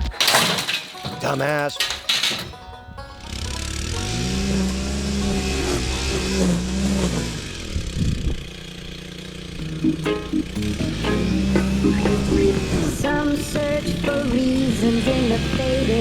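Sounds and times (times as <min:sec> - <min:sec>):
engine revving: 0:03.2 - 0:16.0.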